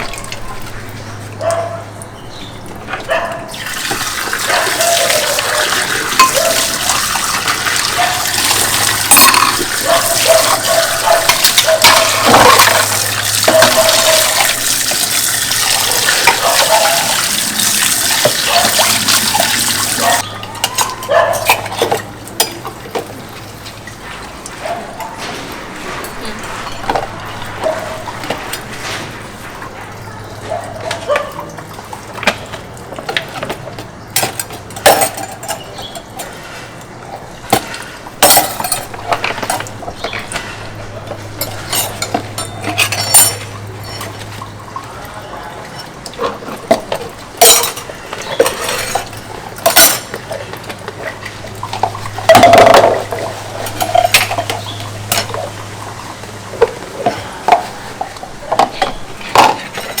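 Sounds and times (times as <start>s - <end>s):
dishes and cutlery clinking: 0.0s - 60.0s.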